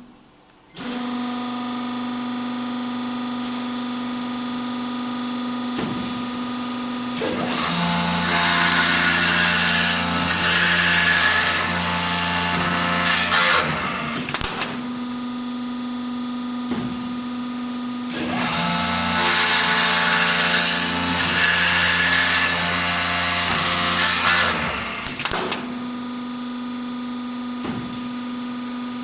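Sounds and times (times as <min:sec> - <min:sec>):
cutter cutting spinning wood: 0:06.2 - 0:14.8, 0:18.0 - 0:25.4.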